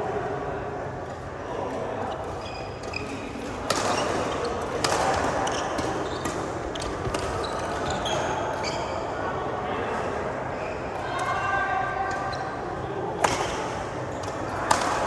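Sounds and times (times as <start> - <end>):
shoes squeaking on court floor: 2.3 - 9.1.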